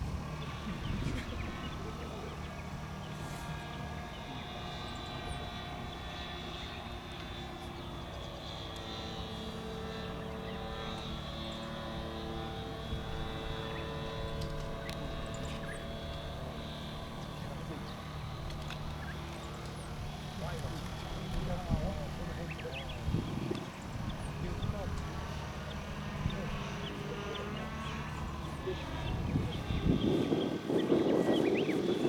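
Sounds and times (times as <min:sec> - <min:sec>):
model plane motor drone: 0:00.0 - 0:32.0.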